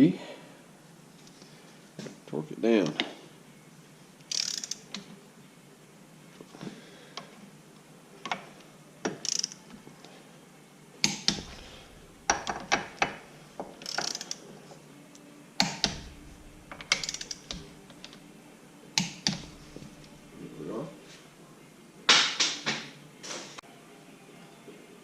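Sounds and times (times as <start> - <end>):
torque wrench ratcheting and clicking: 4.3 - 4.8, 9.2 - 9.6, 13.8 - 14.4, 15.6 - 17.8.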